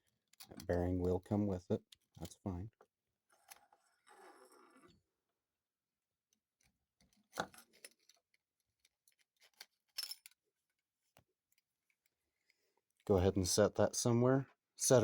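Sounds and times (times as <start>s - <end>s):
metal parts clinking and rattling: 9.0s - 10.4s.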